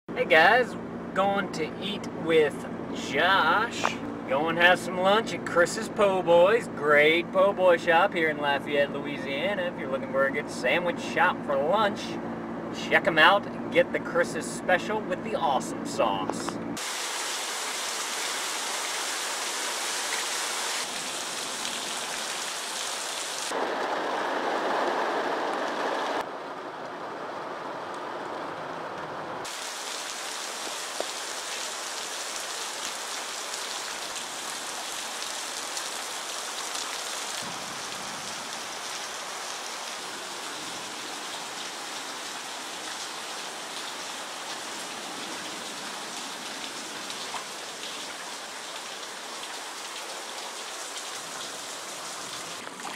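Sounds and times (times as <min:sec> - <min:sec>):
heavy rain falling: 0:16.8 - 0:52.8.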